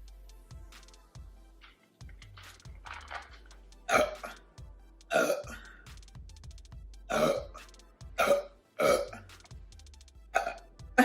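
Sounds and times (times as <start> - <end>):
woman burping: 3.9 - 4.4, 5.1 - 5.5, 7.1 - 7.5, 8.2 - 9.2.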